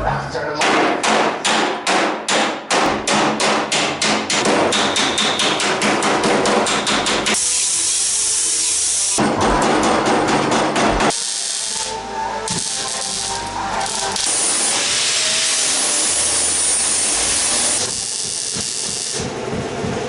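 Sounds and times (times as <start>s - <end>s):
hammer striking sheet steel: 0.6s - 7.8s, 12.5s - 19.7s
steady high hiss: 11.2s - 19.2s.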